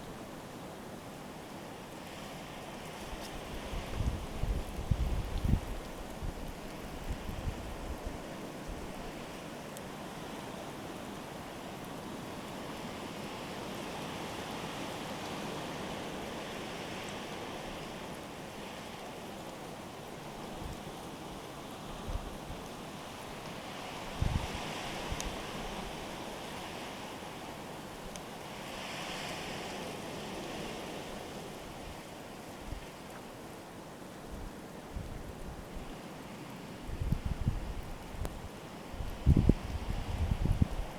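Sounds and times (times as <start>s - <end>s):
wind hissing in snowstorm: 0.0s - 40.9s
wind buffeting microphone: 3.4s - 8.2s, 24.2s - 24.6s, 36.8s - 40.9s.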